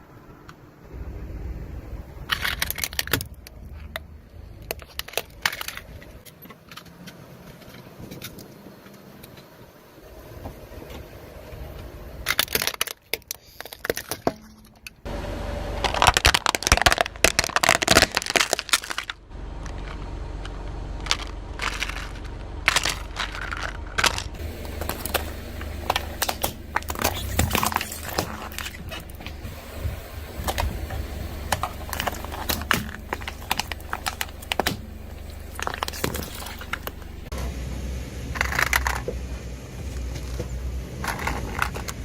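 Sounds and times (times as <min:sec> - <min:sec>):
car engine humming: 0:00.0 - 0:12.8, 0:14.6 - 0:42.0
tyre crushing brittle objects: 0:12.2 - 0:15.0, 0:15.7 - 0:37.4, 0:38.3 - 0:42.0.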